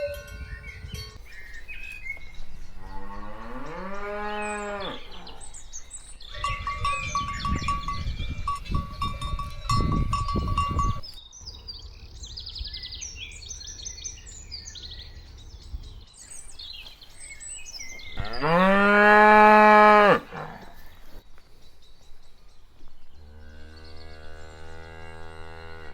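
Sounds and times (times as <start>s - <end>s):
birds chirping: 0.0s - 25.9s
cow mooing: 2.8s - 5.6s, 18.2s - 20.8s.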